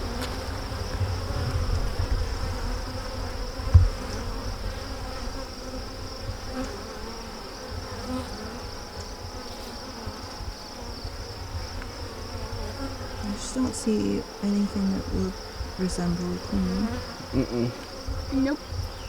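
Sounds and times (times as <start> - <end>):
bees buzzing: 0.0 - 19.0
dull thump: 3.6 - 4.2.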